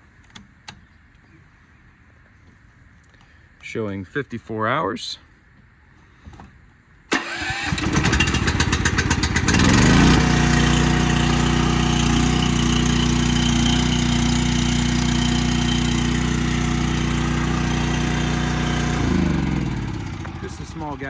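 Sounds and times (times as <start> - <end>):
petrol engine cranking and running: 7.1 - 21.0.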